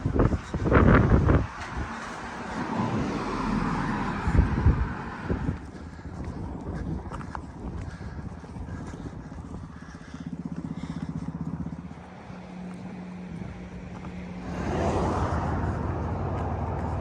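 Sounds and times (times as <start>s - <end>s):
tyre and wind noise: 0.0s - 9.7s
vehicle engine hum: 0.0s - 17.0s.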